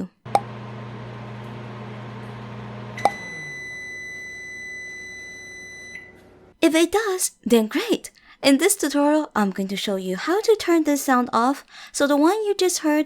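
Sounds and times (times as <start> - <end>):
microwave click: 0.3 - 4.1
microwave oven humming: 0.3 - 6.6.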